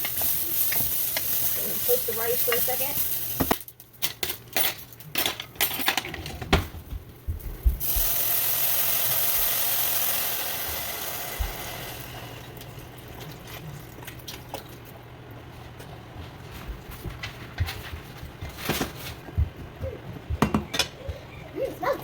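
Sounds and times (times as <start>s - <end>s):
loud sizzling hiss: 0.0s - 3.5s, 7.8s - 12.6s
rice rattling in a pan: 0.0s - 3.7s, 7.8s - 12.4s.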